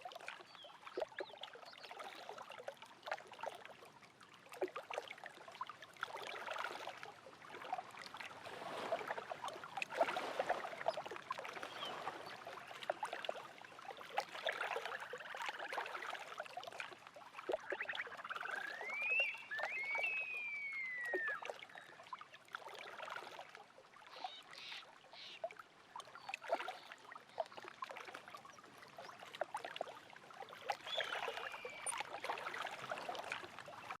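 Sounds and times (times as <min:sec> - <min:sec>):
small waves lapping: 0:00.0 - 0:34.0
bird whistling calls: 0:18.5 - 0:21.9, 0:30.9 - 0:32.0.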